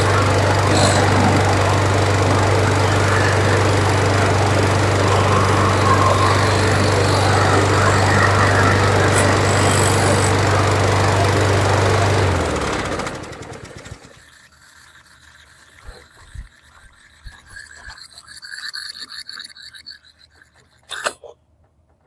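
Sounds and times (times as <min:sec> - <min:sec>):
faint wavering gurgle: 0:00.0 - 0:12.2, 0:13.8 - 0:21.2
lawn mower engine running: 0:00.0 - 0:14.2.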